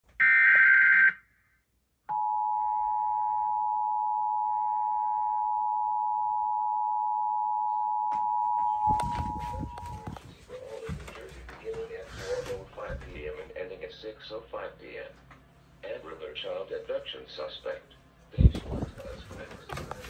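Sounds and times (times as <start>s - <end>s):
two-tone alert signal: 7.3s - 10.1s.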